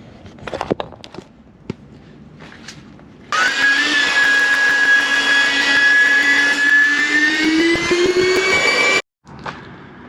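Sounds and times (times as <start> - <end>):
electric air pump whining: 3.3 - 9.1.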